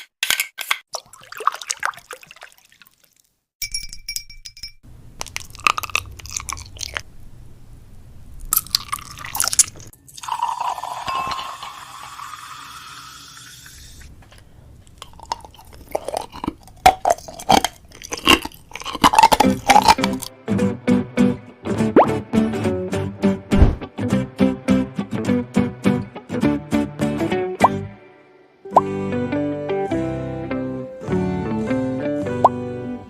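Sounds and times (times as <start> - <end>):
craft materials crinkling: 15.0 - 20.3.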